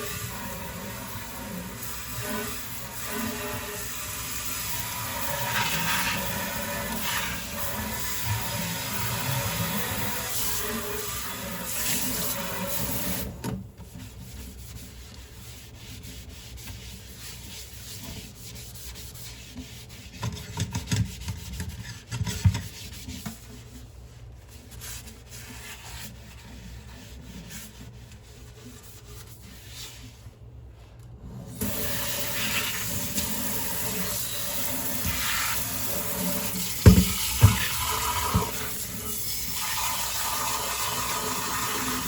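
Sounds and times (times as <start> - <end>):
tap water running: 0.0 - 13.5, 31.6 - 42.0
dishes scrubbed by hand: 13.9 - 30.2, 31.6 - 42.0
dishes knocking: 36.8 - 37.7.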